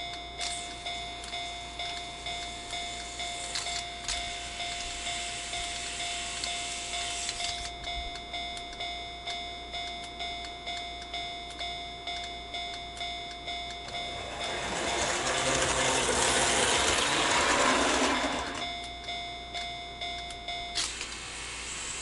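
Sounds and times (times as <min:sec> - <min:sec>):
level crossing bell ringing: 0:08.0 - 0:20.6
passing train rushing: 0:13.8 - 0:18.9.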